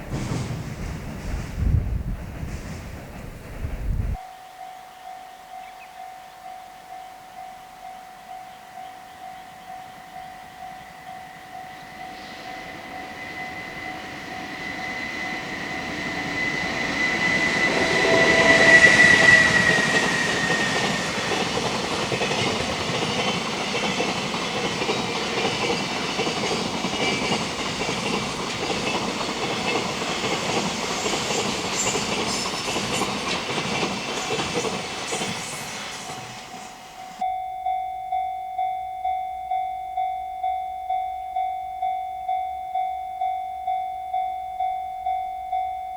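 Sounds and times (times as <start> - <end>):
wheels clattering over rails: 0.0 - 4.2, 12.2 - 37.2
freight train passing: 0.0 - 4.3, 7.4 - 37.2.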